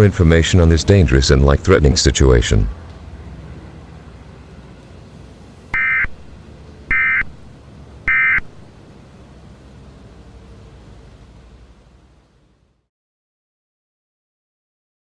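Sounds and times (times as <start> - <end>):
buzzy digital squawks: 5.7 - 6.2, 6.9 - 7.4, 8.1 - 8.6.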